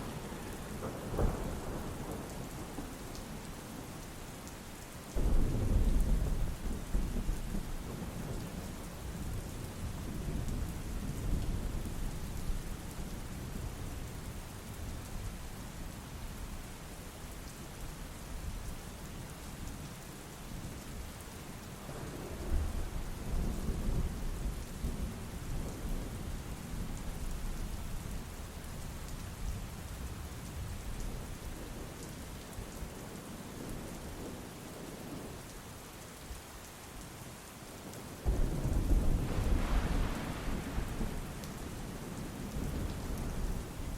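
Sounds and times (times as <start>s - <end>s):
steady rain: 0.0s - 43.9s
rolling thunder: 5.2s - 8.6s, 38.2s - 43.9s.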